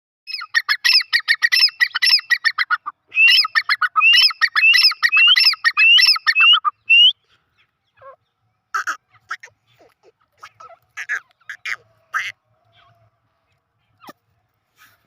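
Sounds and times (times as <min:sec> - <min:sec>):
francolin calling: 0:00.3 - 0:07.3.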